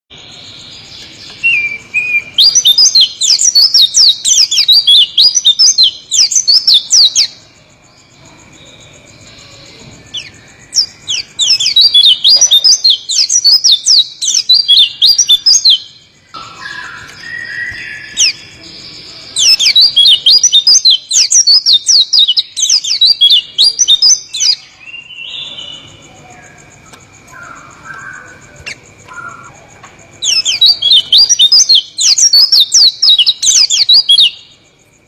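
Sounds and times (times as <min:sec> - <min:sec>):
bird singing rolling song: 0:00.1 - 0:35.0.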